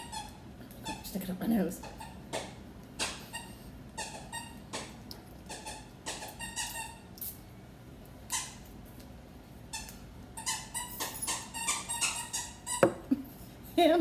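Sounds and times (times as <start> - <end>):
squeaky toy squeaks: 3.0 - 4.6, 5.5 - 7.0, 9.7 - 12.9.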